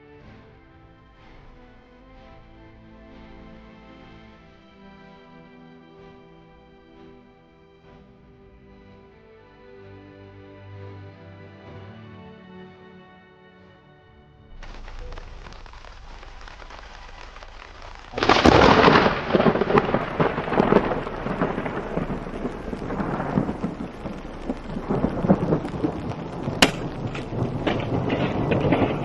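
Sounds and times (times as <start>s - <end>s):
rain hissing: 14.5s - 29.0s
thunder rumbling: 14.5s - 29.0s
sharp thunder crack: 14.6s - 29.0s.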